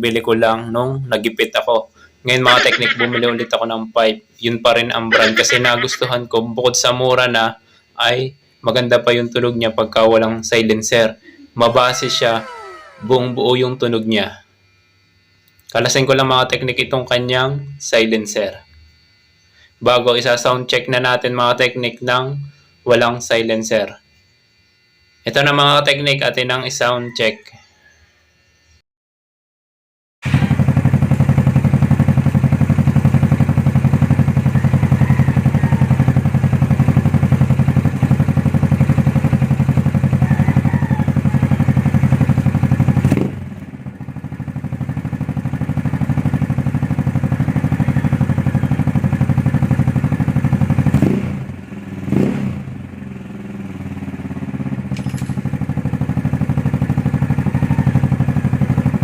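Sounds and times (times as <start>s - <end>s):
scooter engine revving: 2.4s - 3.6s, 5.1s - 6.0s, 11.5s - 14.2s, 30.2s - 59.0s.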